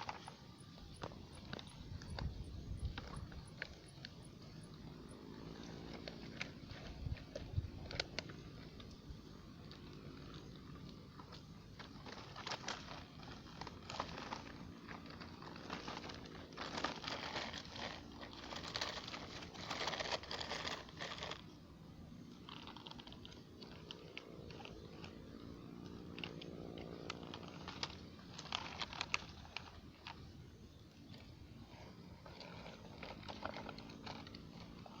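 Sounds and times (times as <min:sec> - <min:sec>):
faint small motor hum: 0:00.0 - 0:35.0
digger scraping soil: 0:10.2 - 0:21.6, 0:31.2 - 0:35.0.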